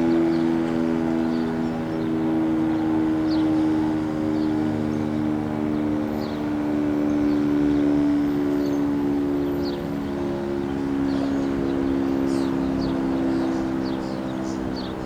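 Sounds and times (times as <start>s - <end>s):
dual-tone warning siren chord: 0.0s - 15.0s.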